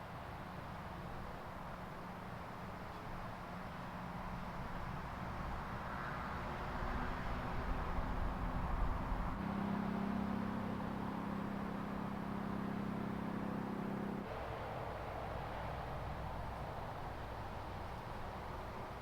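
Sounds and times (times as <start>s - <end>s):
low engine hum: 0.0s - 19.0s
motor vehicle passing: 6.4s - 19.0s.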